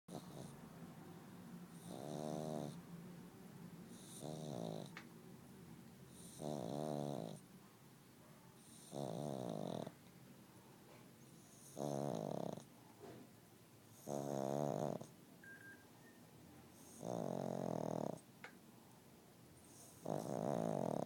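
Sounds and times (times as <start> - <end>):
dog snoring: 0.1 - 0.6, 1.7 - 2.8, 3.9 - 5.0, 6.1 - 7.4, 8.6 - 10.0, 11.3 - 12.7, 13.9 - 15.1, 16.7 - 18.3, 19.6 - 21.0
dog breathing: 19.6 - 21.0.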